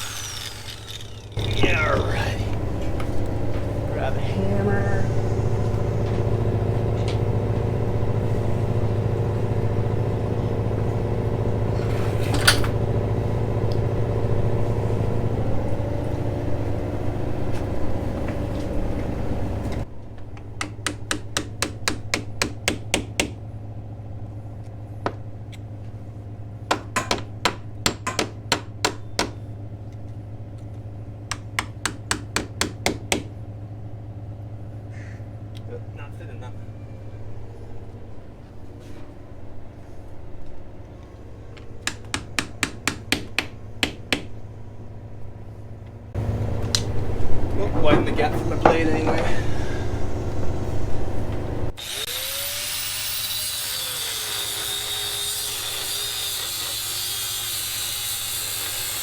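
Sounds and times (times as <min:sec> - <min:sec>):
mechanical drone: 0:00.0 - 0:19.8.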